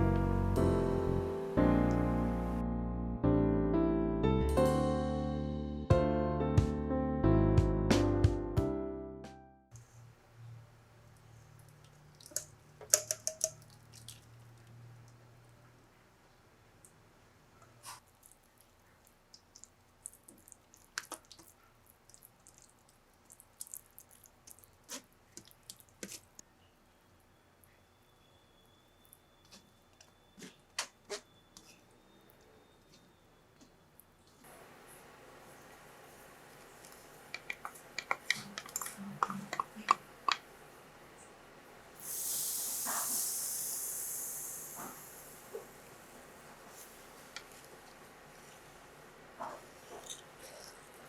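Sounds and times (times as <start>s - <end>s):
steady high hiss: 0.0s - 2.7s, 39.8s - 47.7s
small objects clicking and tapping: 11.8s - 14.2s, 36.8s - 40.4s.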